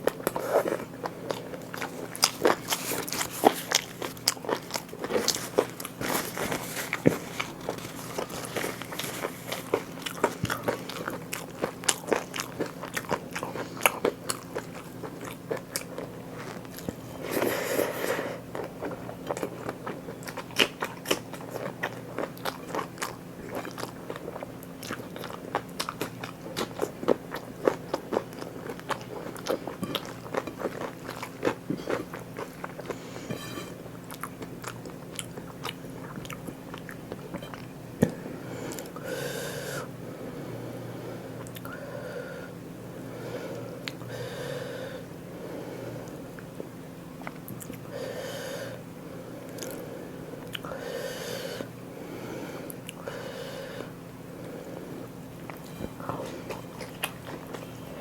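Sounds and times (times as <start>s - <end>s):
person crunching and chewing: 0.0s - 39.0s, 54.4s - 58.0s
low steady hum: 0.0s - 58.0s
rustling: 5.0s - 10.4s.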